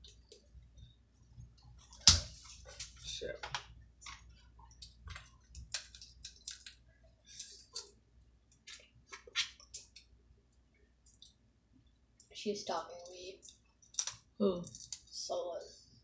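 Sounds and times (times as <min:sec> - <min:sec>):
crab shell cracking: 0:05.5 - 0:06.8, 0:13.8 - 0:15.0.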